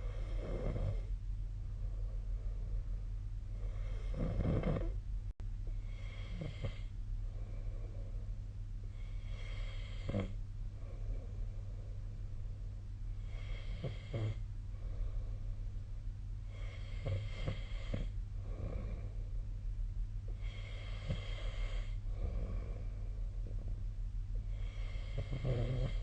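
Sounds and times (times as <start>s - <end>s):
person snoring: 0.0s - 1.1s, 3.6s - 5.0s, 5.9s - 6.9s, 9.0s - 11.3s, 13.2s - 14.4s, 16.5s - 19.2s, 24.5s - 26.0s
steady low hum: 0.0s - 26.0s.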